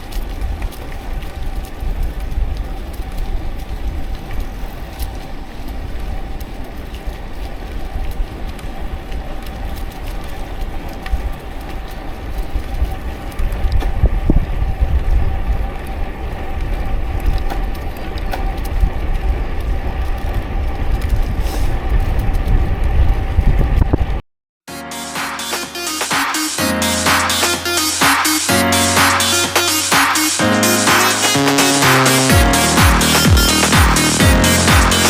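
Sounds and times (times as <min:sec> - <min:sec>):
wind buffeting microphone: 0:00.0 - 0:24.2.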